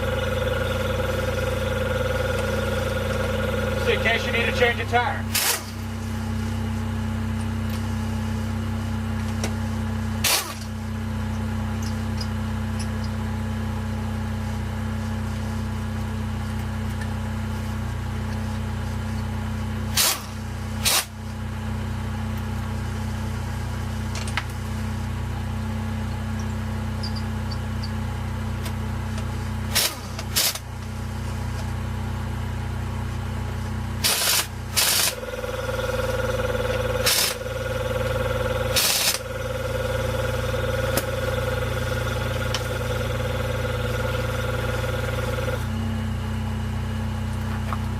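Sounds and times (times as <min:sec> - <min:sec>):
pneumatic impact wrench bursts: 0:00.0 - 0:05.9, 0:10.2 - 0:10.7, 0:19.9 - 0:21.2, 0:29.7 - 0:30.7, 0:34.0 - 0:45.7
air compressor running: 0:00.0 - 0:47.9
car engine idling: 0:00.0 - 0:47.9.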